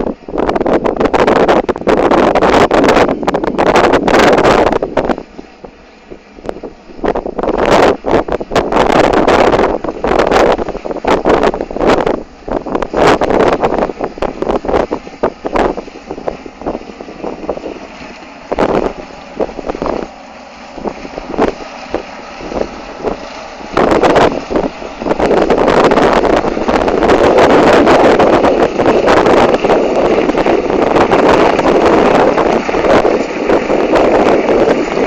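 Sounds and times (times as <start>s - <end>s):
harvesting machinery running: 0.0s - 35.0s
wind buffeting microphone: 0.0s - 35.0s.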